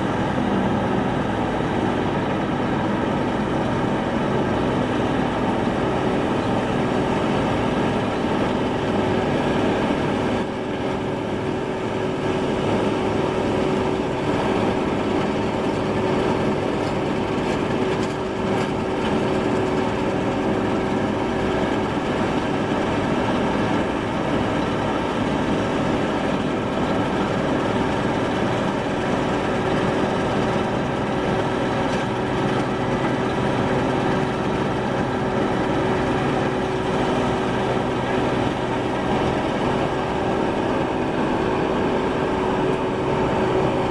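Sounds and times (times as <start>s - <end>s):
combine harvester engine running: 0.0s - 43.9s.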